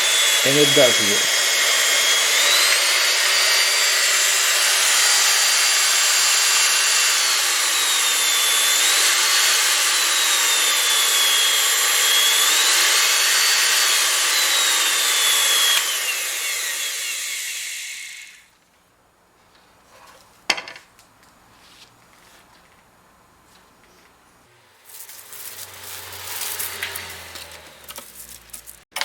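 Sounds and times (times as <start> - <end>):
band saw motor whining: 0.0 - 18.5, 24.8 - 28.8.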